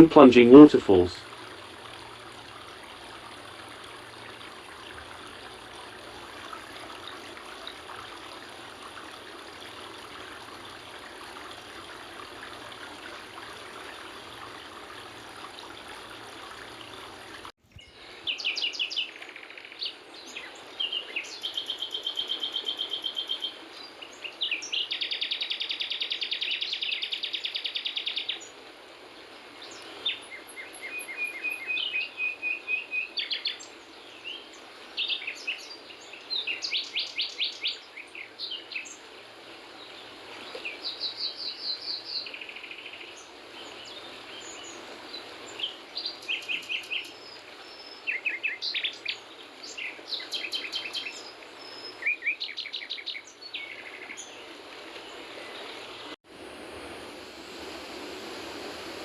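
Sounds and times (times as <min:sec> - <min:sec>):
stream water rushing: 0:00.0 - 0:59.0
songbirds chirping and trilling: 0:29.6 - 0:39.0, 0:39.8 - 0:56.2.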